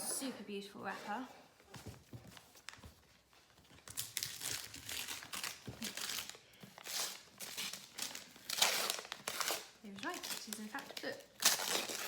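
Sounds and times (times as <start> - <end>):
wrapper crinkling and rustling: 2.4 - 12.0
wrapper tearing: 3.9 - 12.0.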